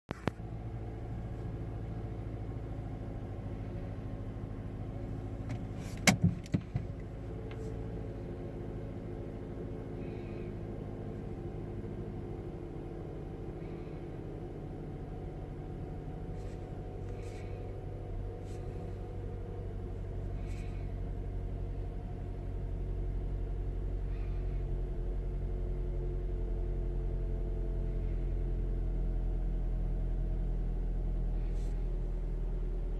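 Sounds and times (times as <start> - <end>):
car engine idling roughly: 0.1 - 32.9.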